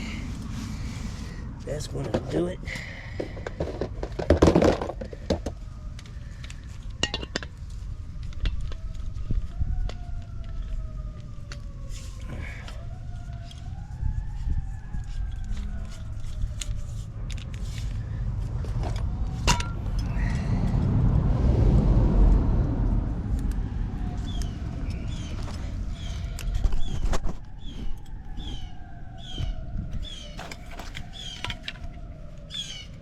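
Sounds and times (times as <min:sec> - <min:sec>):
rising and falling whine: 0:00.0 - 0:03.8, 0:05.3 - 0:33.0
vehicle passing: 0:17.6 - 0:26.4.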